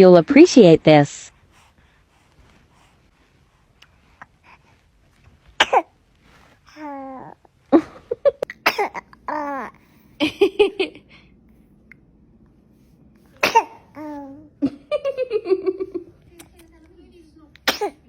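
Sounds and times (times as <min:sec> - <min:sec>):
baby sneezing: 0:05.6 - 0:05.9, 0:08.6 - 0:09.1, 0:13.4 - 0:14.2, 0:17.6 - 0:18.0.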